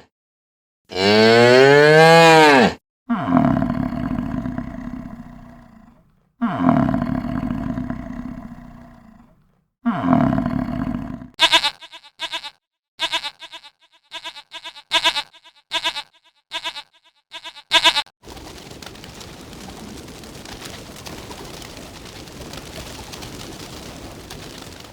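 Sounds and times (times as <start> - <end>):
long falling animal calls: 3.3 - 9.3, 18.2 - 24.9.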